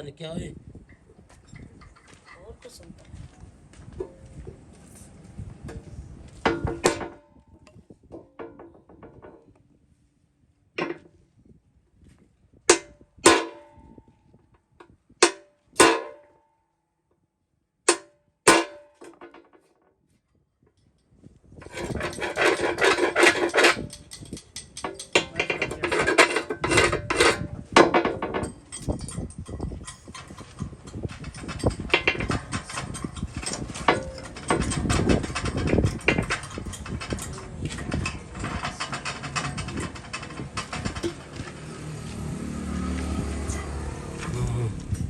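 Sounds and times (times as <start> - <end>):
heavy blows on steel wheel rim: 6.4 - 9.4, 12.7 - 14.2, 15.2 - 16.4
rapid metallic clatter: 21.6 - 42.1.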